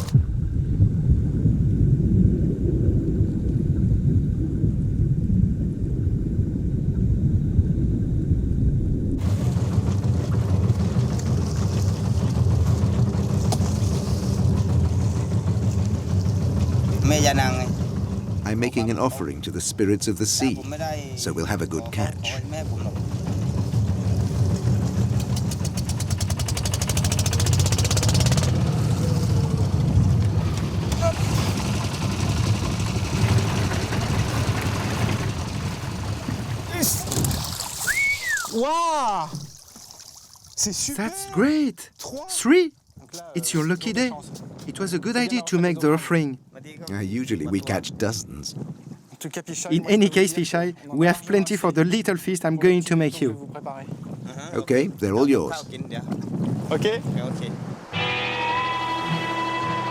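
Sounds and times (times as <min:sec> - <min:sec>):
deep muffled rumble: 0:00.0 - 0:26.4, 0:27.1 - 0:37.3
boat engine: 0:00.0 - 0:44.1, 0:57.8 - 0:59.9
fast even clatter: 0:09.2 - 0:18.7, 0:22.2 - 0:28.7, 0:30.2 - 0:37.9.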